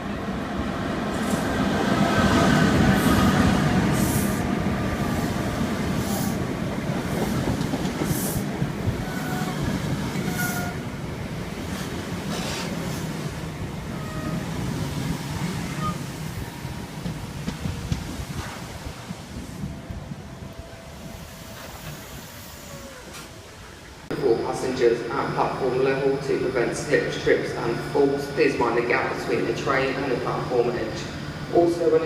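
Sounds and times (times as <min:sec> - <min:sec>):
train rumbling past: 0:00.0 - 0:32.0
train wheels squealing: 0:15.4 - 0:16.1.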